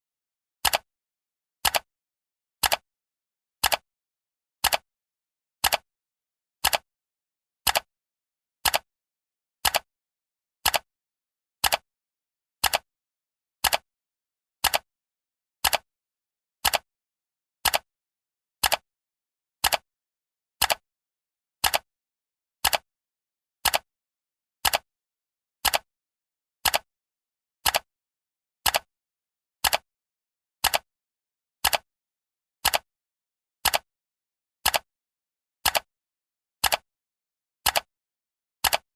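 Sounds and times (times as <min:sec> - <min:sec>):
timer clock ticking: 0:00.6 - 0:00.9, 0:01.6 - 0:01.9, 0:02.6 - 0:02.8, 0:03.6 - 0:03.8, 0:04.6 - 0:04.8, 0:05.6 - 0:05.8, 0:06.6 - 0:06.9, 0:07.6 - 0:07.9, 0:08.6 - 0:08.9, 0:09.6 - 0:09.9, 0:11.6 - 0:11.8, 0:12.6 - 0:12.8, 0:13.6 - 0:13.8, 0:14.6 - 0:14.9, 0:15.6 - 0:15.9, 0:16.6 - 0:16.9, 0:17.6 - 0:17.9, 0:18.6 - 0:18.8, 0:19.6 - 0:19.8, 0:20.6 - 0:20.8, 0:21.6 - 0:21.9, 0:22.6 - 0:22.8, 0:23.6 - 0:23.9, 0:24.6 - 0:24.8, 0:25.6 - 0:25.9, 0:26.6 - 0:26.9, 0:27.6 - 0:27.9, 0:28.6 - 0:28.9, 0:29.6 - 0:29.8, 0:30.6 - 0:30.9, 0:31.6 - 0:31.9, 0:32.6 - 0:32.9, 0:33.6 - 0:33.9, 0:34.6 - 0:34.9, 0:35.6 - 0:35.9, 0:36.6 - 0:36.9, 0:37.6 - 0:37.9, 0:38.6 - 0:38.9.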